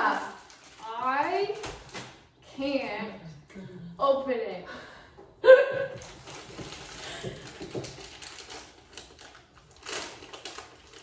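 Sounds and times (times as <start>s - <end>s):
package rustling and clicking: 6.0s - 11.0s.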